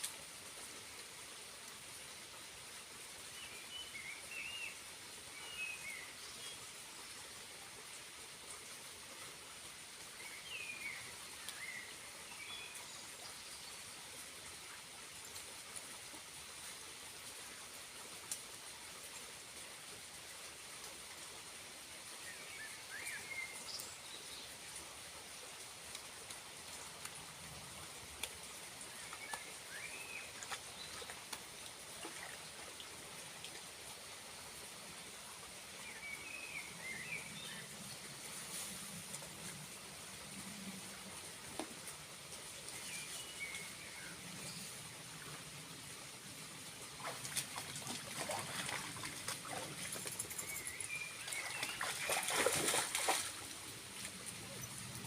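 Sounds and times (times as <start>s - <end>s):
small waterfall trickling: 0.0s - 55.0s
water splashes: 25.6s - 34.0s, 46.3s - 54.7s.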